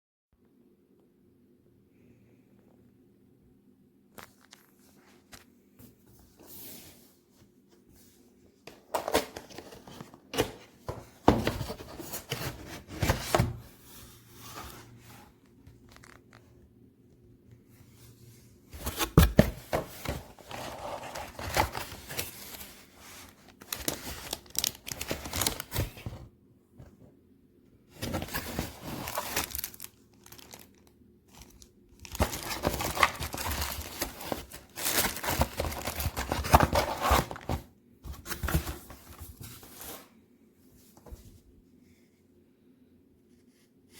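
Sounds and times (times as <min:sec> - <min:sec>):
packaging crinkling and tearing: 0:15.8 - 0:16.4, 0:20.1 - 0:26.0, 0:28.0 - 0:37.6.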